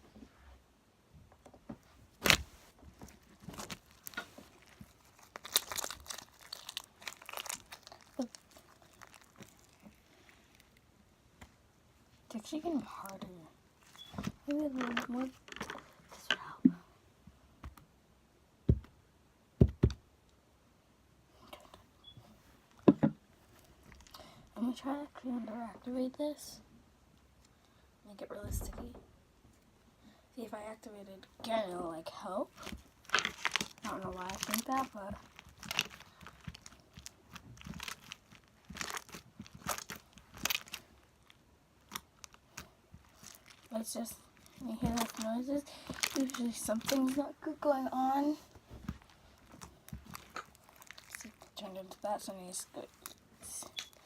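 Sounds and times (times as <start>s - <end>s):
slime squelching by hand: 2.2s - 10.9s, 32.5s - 54.0s.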